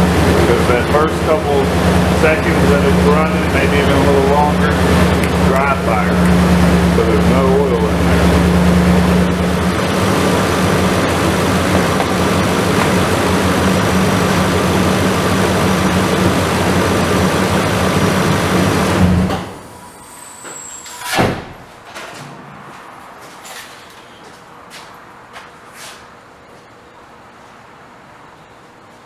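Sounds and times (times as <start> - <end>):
truck engine idling: 0.0 - 19.7.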